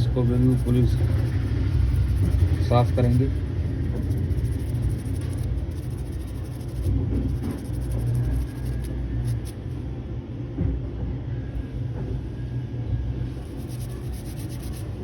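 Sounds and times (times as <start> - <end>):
small brush scratching: 0.0 - 9.6, 13.3 - 15.0
low background rumble: 0.0 - 10.9, 11.6 - 15.0.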